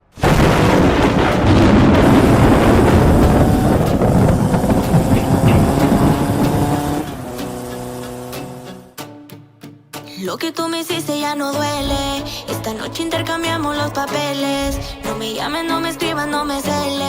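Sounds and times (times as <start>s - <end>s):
loud dense rumbling: 0.1s - 7.4s
steady music tones: 0.9s - 9.0s.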